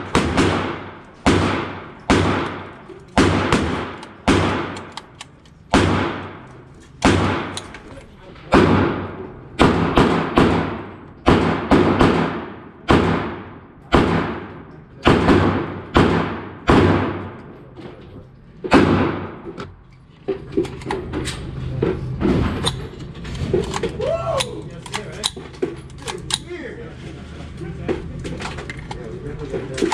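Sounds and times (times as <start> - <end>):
pistol gunshots with echo: 0.0 - 7.7, 8.5 - 17.5, 18.7 - 19.4.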